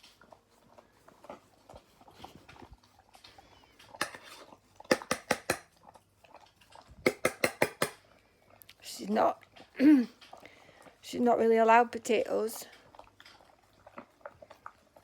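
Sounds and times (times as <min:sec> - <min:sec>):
dog chomping food: 0:00.2 - 0:08.2.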